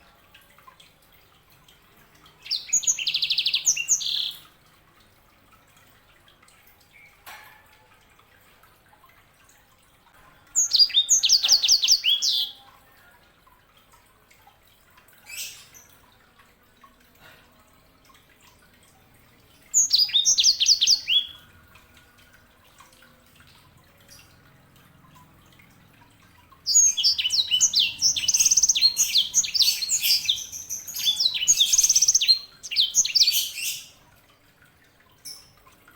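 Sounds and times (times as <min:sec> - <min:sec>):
songbird singing rapid high notes: 0:19.8 - 0:21.4, 0:26.7 - 0:34.0.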